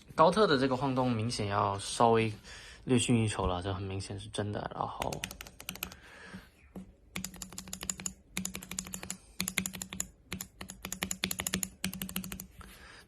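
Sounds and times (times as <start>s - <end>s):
mechanical keyboard switches clicking: 7.2s - 12.5s.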